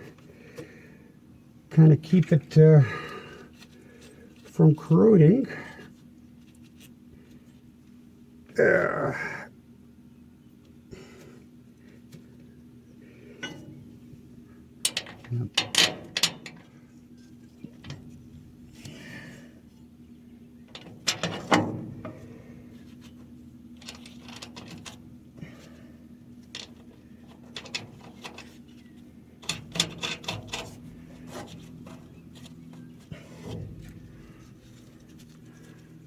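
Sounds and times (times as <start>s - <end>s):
low hum: 12.5s - 36.0s
metal tools clinking: 13.4s - 13.8s, 14.9s - 16.7s.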